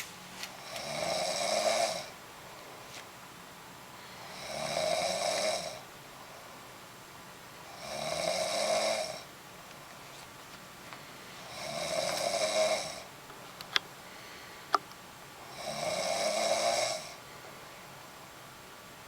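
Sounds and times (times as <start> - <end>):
woman snoring: 0.6 - 2.2, 4.2 - 5.8, 7.7 - 9.3, 11.5 - 13.1, 15.4 - 17.2.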